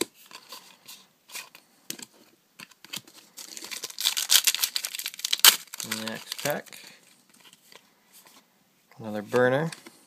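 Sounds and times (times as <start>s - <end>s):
foil pack crinkling and tearing: 3.2s - 6.9s.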